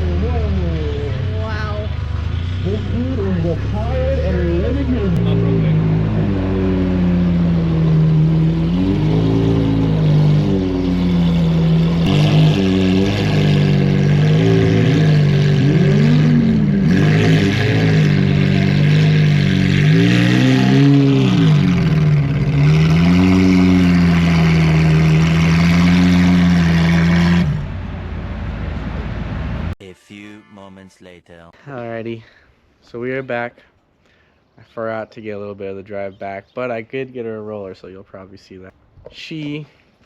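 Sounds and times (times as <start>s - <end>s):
car engine revving: 0.0s - 29.8s.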